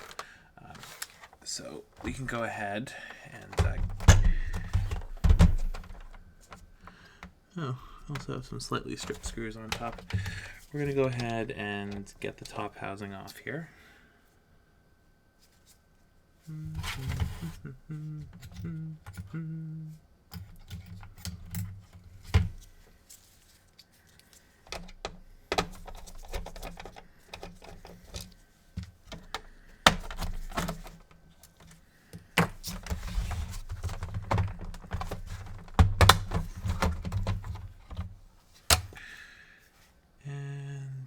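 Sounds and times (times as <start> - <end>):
plastic housing clicks and rattles: 24.3 - 31.8, 32.4 - 38.1.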